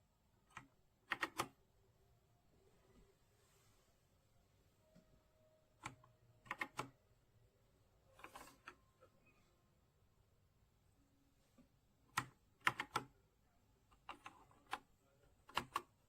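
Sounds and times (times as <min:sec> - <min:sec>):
mechanical keyboard clicks: 0:00.5 - 0:01.6, 0:05.8 - 0:06.9, 0:12.1 - 0:13.1, 0:15.4 - 0:15.9.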